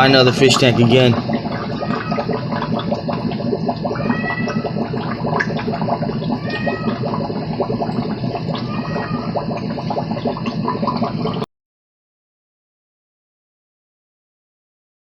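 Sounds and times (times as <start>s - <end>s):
aquarium filter bubbling: 0.0s - 11.5s.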